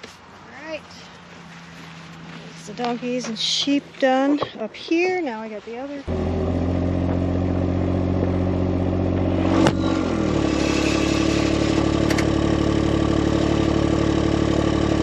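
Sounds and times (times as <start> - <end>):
utility vehicle engine running: 6.1 - 15.0.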